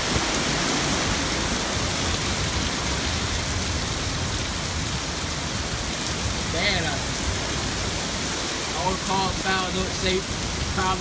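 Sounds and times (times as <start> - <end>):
hurricane wind and rain: 0.0 - 11.0.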